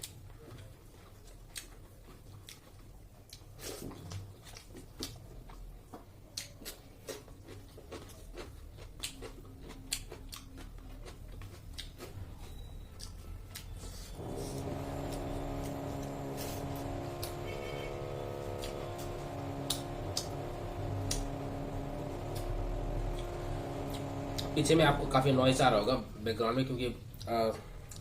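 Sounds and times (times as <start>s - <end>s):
chewing and biting food: 0.0s - 25.2s
steady low hum: 14.2s - 25.6s.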